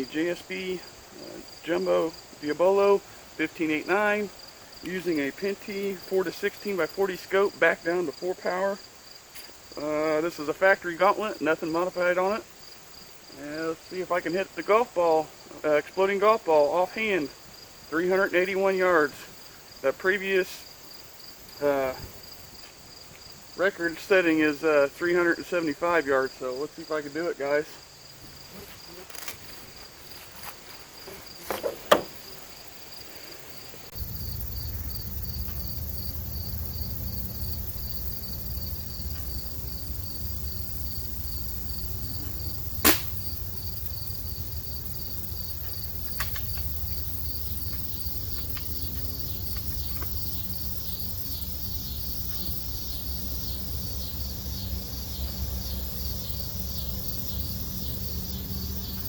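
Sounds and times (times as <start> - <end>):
crickets chirping: 0.0 - 59.0
air rifle shot crack: 42.8 - 43.3.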